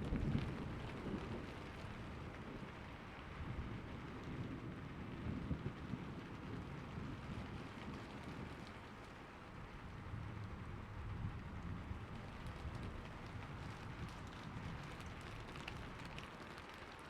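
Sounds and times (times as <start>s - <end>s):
rain falling: 0.0s - 17.0s.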